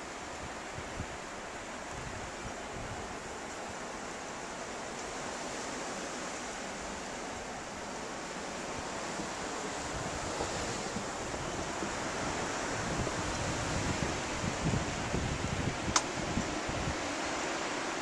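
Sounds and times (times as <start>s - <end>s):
blizzard wind rushing: 0.0s - 18.0s
wind buffeting microphone: 8.8s - 17.9s.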